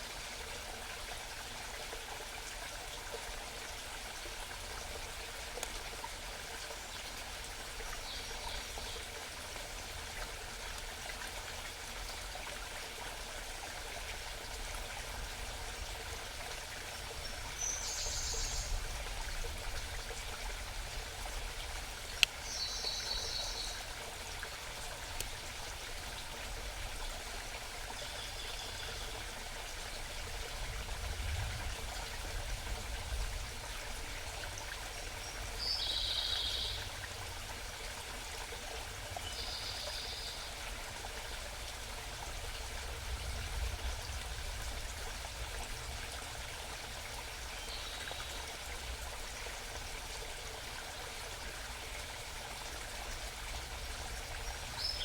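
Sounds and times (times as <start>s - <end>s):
stream babbling: 0.0s - 55.0s.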